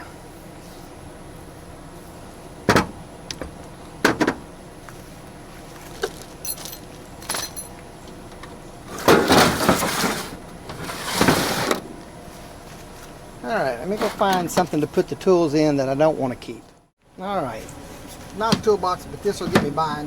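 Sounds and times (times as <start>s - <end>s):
steady low hum: 0.0s - 20.0s
tools clattering: 6.0s - 7.7s.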